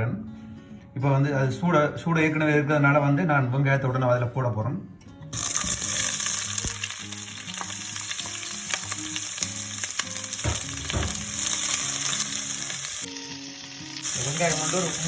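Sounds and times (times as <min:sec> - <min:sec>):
onions sizzling in oil: 0:05.4 - 0:15.0.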